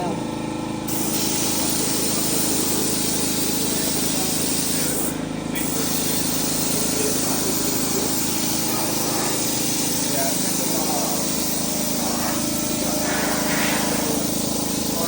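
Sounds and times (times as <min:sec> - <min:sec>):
motor hum: 0:00.0 - 0:15.0
paint spraying hiss: 0:05.7 - 0:15.0.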